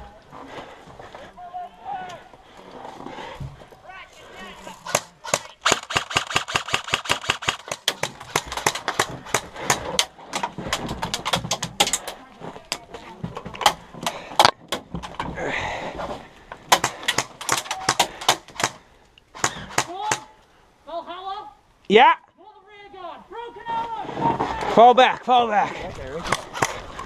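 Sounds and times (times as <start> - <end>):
airsoft guns firing: 4.8 - 10.1, 16.7 - 18.8, 19.4 - 20.3.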